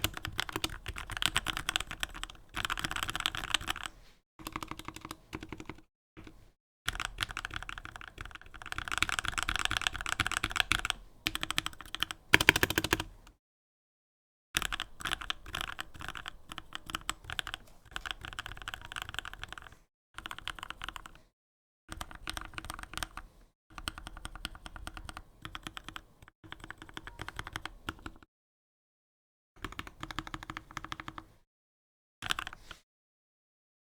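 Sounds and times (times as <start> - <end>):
mechanical keyboard key clicks: 12.4 - 13.1.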